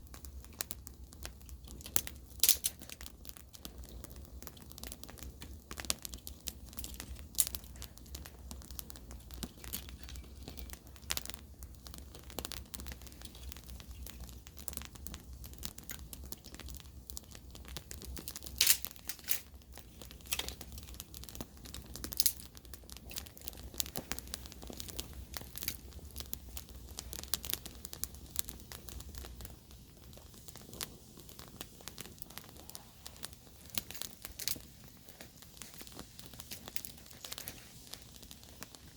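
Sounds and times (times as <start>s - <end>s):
campfire crackling and popping: 0.0s - 38.9s.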